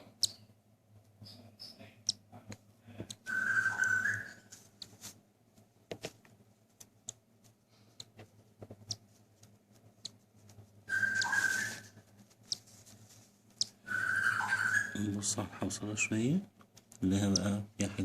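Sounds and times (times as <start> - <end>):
chick whistling begging call: 3.3 - 4.4, 10.9 - 11.9, 13.9 - 15.0
faint small clicks: 6.8 - 10.2.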